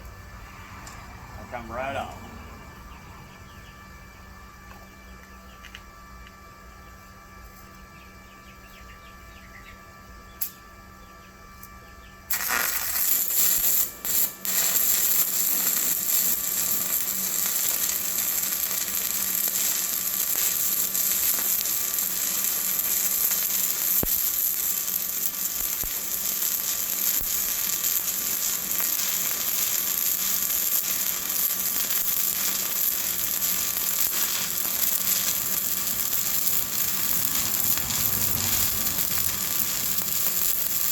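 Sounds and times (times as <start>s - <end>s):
stick welding arc crackling: 12.3s - 40.9s.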